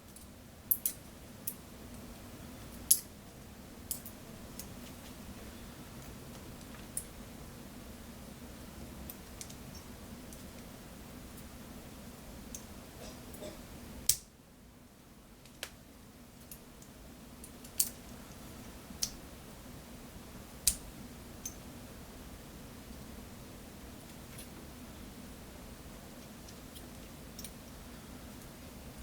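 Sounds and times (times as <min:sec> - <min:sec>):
faint steady hum: 0:00.0 - 0:29.0
metallic clicks of lock tools: 0:17.4 - 0:18.0.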